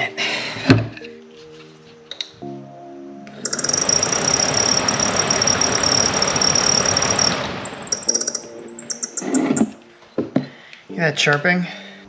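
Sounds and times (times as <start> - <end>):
blower motor whirring: 3.4 - 8.4
high steady squeal: 3.4 - 9.8
rapid chirping ticks: 3.4 - 9.9.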